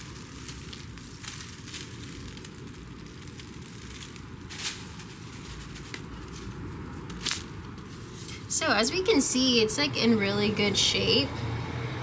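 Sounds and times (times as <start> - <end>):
plastic bag of soil crackling: 0.0 - 9.2
steady background hiss: 0.0 - 11.5.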